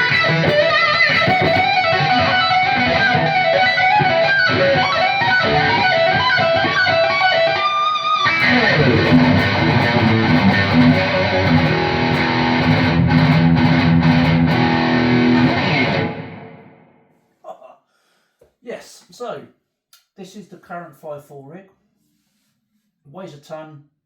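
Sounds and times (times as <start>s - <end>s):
electric guitar through an amp: 0.0s - 16.9s.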